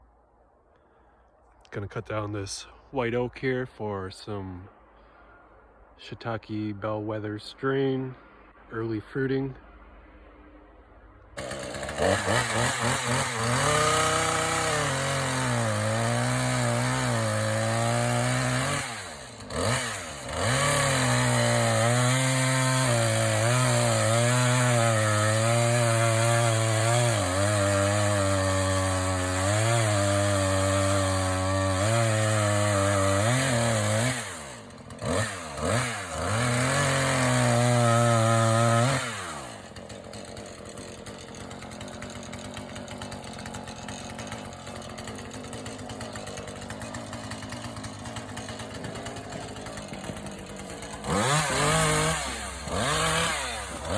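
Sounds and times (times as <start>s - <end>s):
chainsaw cutting wood: 11.4s - 53.9s.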